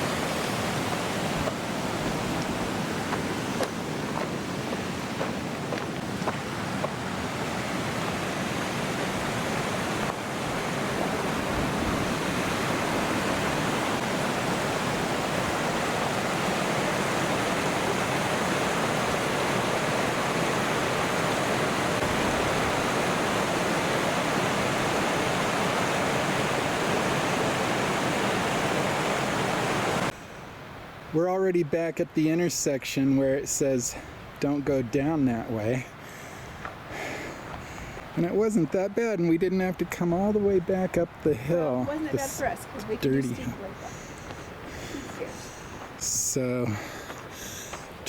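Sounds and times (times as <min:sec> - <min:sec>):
waterfall rushing: 0:00.0 - 0:30.2, 0:41.1 - 0:48.0.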